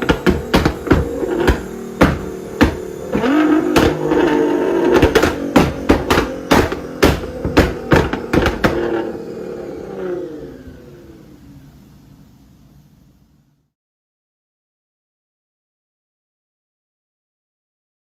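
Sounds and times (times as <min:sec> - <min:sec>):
exhaust pops and cracks: 0:00.0 - 0:09.3
sports car engine revving: 0:00.0 - 0:11.8.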